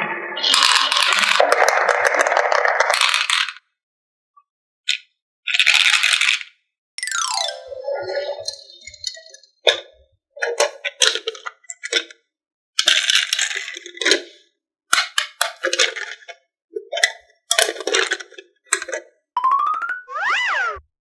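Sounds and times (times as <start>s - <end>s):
marbles rolling down wooden track: 0.5s - 3.6s
falling whistle-like glide: 20.0s - 20.8s.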